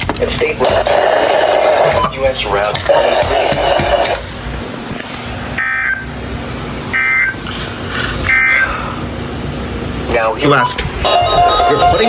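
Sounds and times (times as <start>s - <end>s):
harsh warbling digital bursts: 10.5s - 12.0s.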